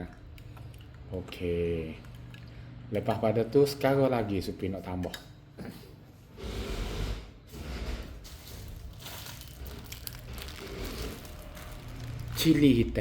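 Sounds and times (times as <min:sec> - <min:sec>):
packet crinkling and rustling: 0:08.2 - 0:13.0.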